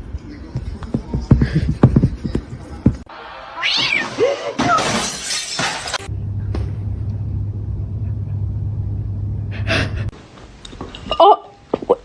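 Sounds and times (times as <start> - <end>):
loud shattering crash: 4.0 - 6.1
steady low hum: 6.0 - 11.1.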